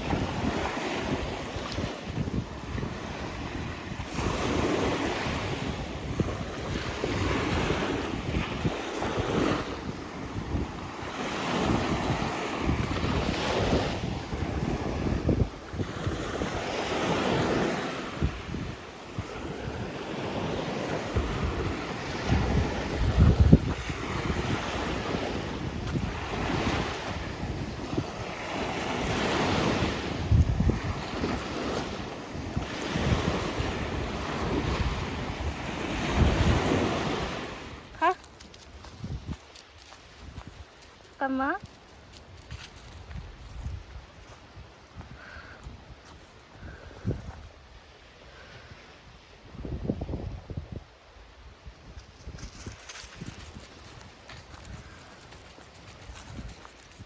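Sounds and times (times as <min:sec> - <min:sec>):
sea waves washing onto beach: 0:00.0 - 0:38.6
wind buffeting microphone: 0:00.0 - 0:40.8, 0:41.4 - 0:47.7, 0:49.4 - 0:50.9, 0:51.5 - 0:57.0.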